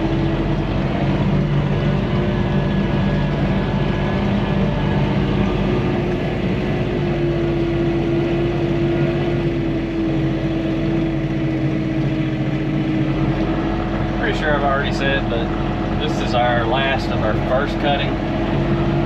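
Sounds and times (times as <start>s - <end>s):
steady whine: 0.0s - 19.0s
tractor engine running: 0.0s - 19.0s.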